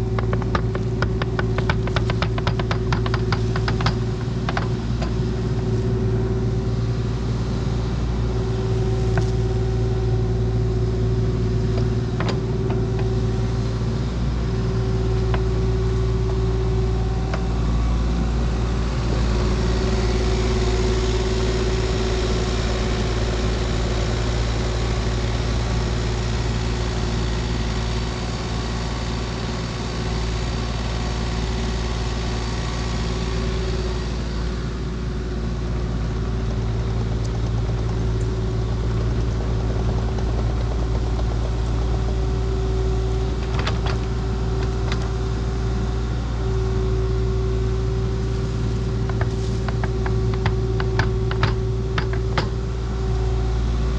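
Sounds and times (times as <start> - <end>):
earthmoving machine engine hum: 0.0 - 53.9.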